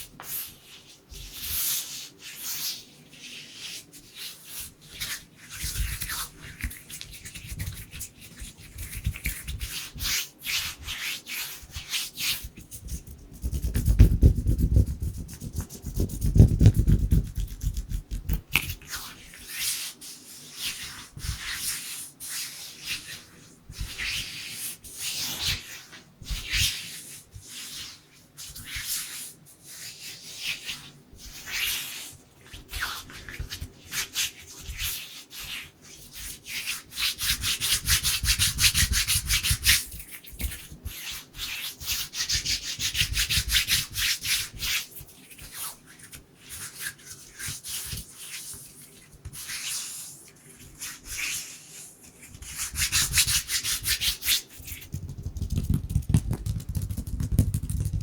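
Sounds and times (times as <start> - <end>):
hands rubbing together: 0.2 - 27.0, 42.8 - 58.0.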